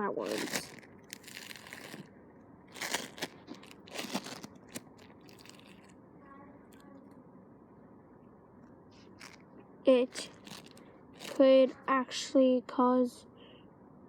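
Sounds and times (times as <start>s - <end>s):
sticky slime squeezed by hand: 0.2s - 2.1s, 2.7s - 5.9s, 9.0s - 9.4s, 10.1s - 11.4s.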